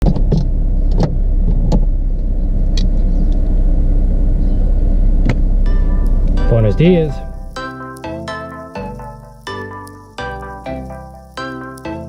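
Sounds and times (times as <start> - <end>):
vehicle rumbling on the move: 0.0 - 7.6.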